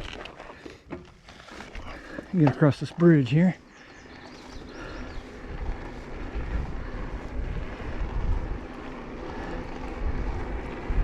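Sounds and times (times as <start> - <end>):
bike rolling noise: 0.0 - 11.0
wind buffeting microphone: 3.7 - 11.0.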